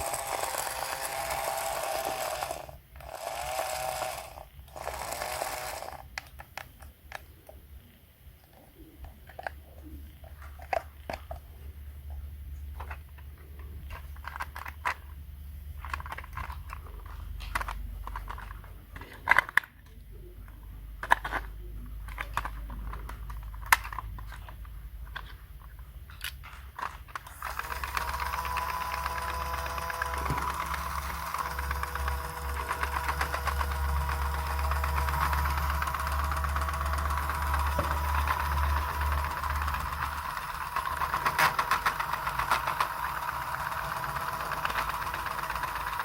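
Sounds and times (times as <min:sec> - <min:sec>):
small motor whirring: 0:00.0 - 0:06.1, 0:27.2 - 0:46.0
steady low hum: 0:00.0 - 0:41.1
clicks and crunchy handling noises: 0:06.0 - 0:28.8.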